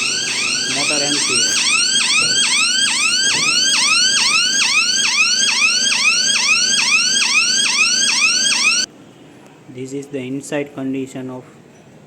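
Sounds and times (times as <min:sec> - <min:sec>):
electronic hooter siren: 0:00.0 - 0:08.9.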